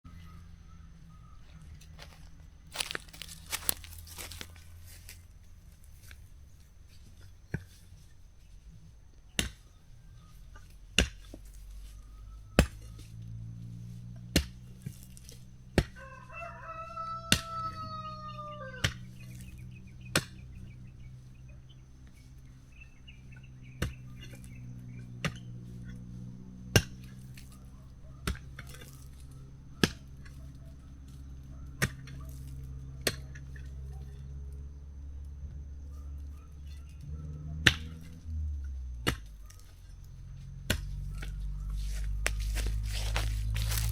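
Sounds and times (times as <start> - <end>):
rooster crowing: 15.8 - 19.4.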